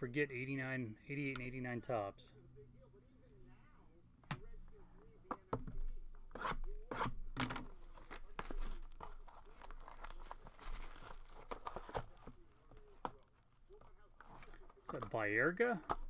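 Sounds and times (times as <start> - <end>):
packaging crinkling and tearing: 7.7 - 14.8.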